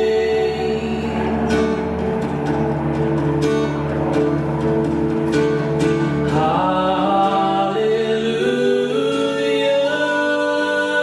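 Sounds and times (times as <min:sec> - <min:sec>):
guitar accompaniment: 0:00.0 - 0:11.0
person singing long notes: 0:00.0 - 0:11.0.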